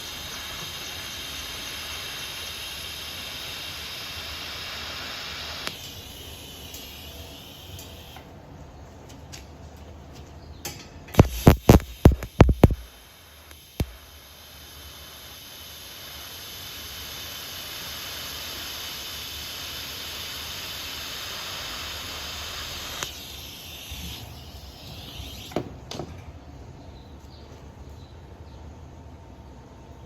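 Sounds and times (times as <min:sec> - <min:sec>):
welding arc hissing: 0:00.0 - 0:08.3, 0:11.2 - 0:25.8
sharp clicks: 0:05.6 - 0:06.0, 0:11.2 - 0:14.0, 0:22.8 - 0:23.2.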